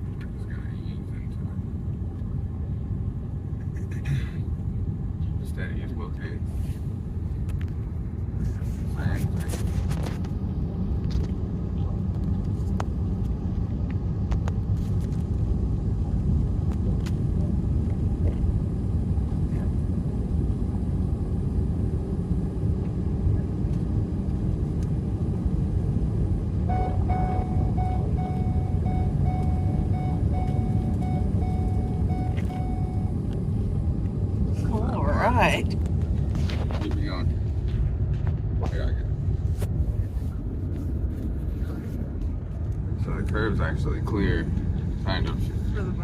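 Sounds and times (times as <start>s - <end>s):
steady high tone: 26.7s - 33.2s.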